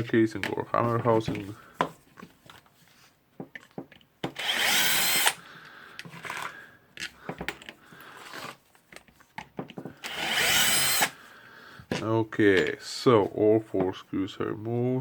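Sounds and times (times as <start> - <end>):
power screwdriver running: 4.4 - 5.4, 10.0 - 11.2.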